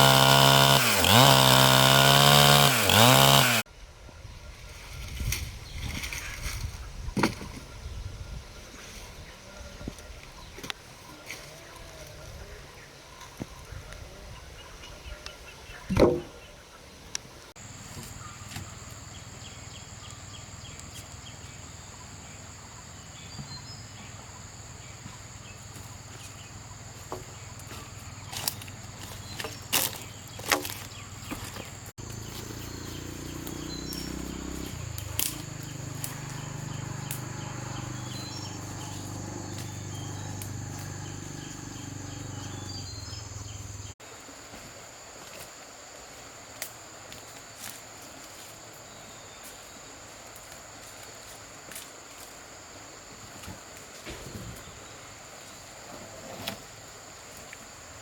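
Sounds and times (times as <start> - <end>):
outdoor ambience: 0.0 - 58.0
insects buzzing: 17.6 - 58.0.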